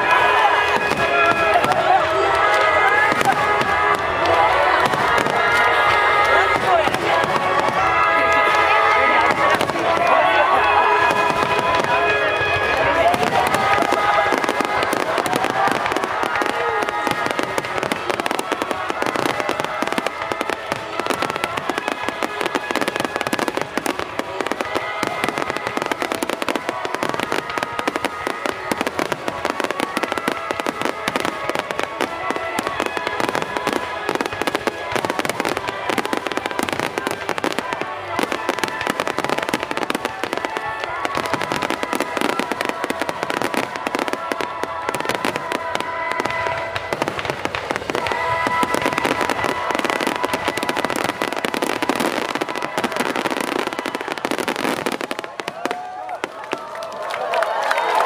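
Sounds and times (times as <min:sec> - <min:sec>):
fireworks crackling and popping: 0:00.0 - 0:58.0
music playing: 0:00.0 - 0:58.0.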